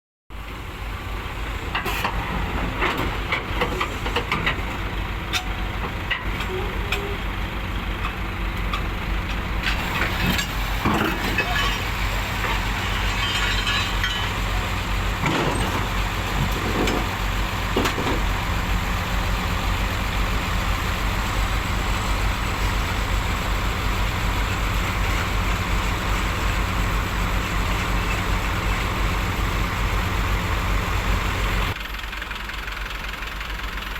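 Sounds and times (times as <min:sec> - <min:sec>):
heavy diesel engines running: 0:00.3 - 0:33.9.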